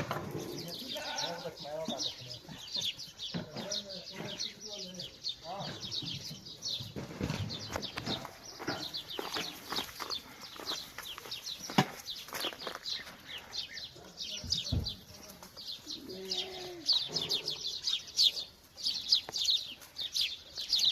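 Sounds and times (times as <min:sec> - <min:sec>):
small birds chirping: 0:00.0 - 0:20.9
knocks and rustles: 0:05.6 - 0:10.2.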